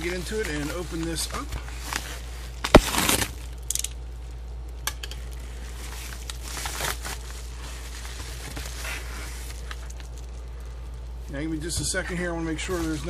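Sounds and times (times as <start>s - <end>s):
packaging rustling and clicking: 0.0s - 4.0s, 4.8s - 10.4s
steady low hum: 0.0s - 13.0s.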